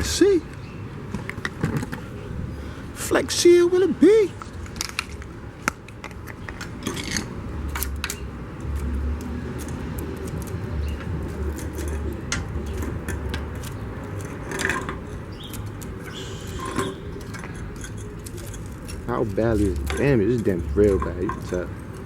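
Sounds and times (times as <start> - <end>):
small parts clicking and clinking: 4.6 - 22.0.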